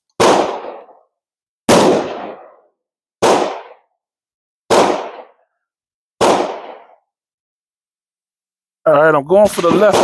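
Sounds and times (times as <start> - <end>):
gunshots: 0.2 - 0.9, 1.7 - 2.6, 3.2 - 3.9, 4.7 - 5.4, 6.2 - 7.0, 9.4 - 10.0.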